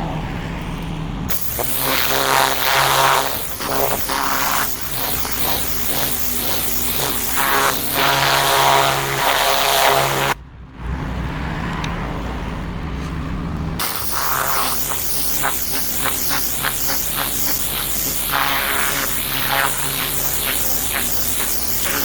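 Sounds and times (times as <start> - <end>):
electronic dance music: 1.3 - 10.4, 13.8 - 22.0.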